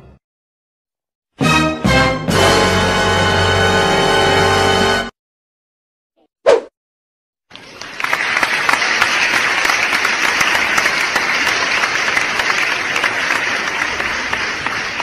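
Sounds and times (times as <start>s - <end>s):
crowd clapping: 7.5s - 15.0s.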